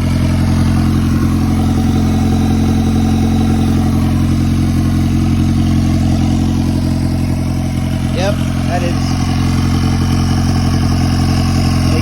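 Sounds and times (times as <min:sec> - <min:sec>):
turbocharged car engine idling: 0:00.0 - 0:12.0.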